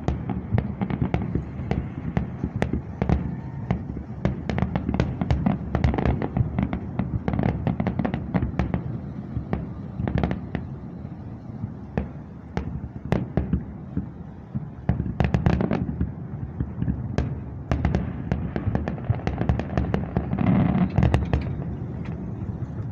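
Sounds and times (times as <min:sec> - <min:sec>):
fireworks booms and cracks: 0:00.0 - 0:22.9
low rolling rumble: 0:20.1 - 0:22.9.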